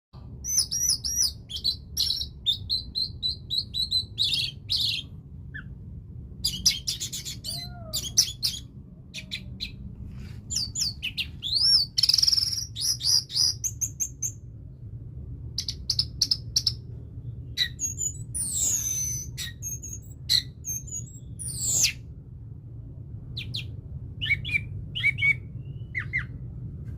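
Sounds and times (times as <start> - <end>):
steady low hum: 0.2 - 26.9.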